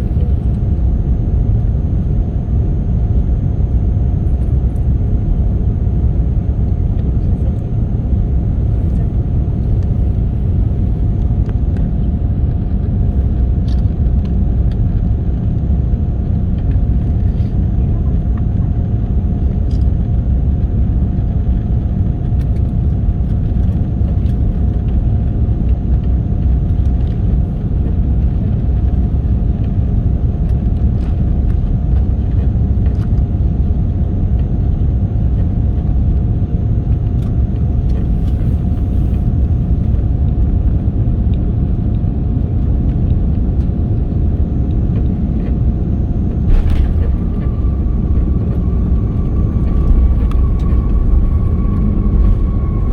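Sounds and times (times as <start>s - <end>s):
thin steady hum: 0.0s - 25.3s, 33.4s - 52.9s
jet engine and airflow rumble: 0.0s - 52.9s
higher hum: 43.9s - 52.9s.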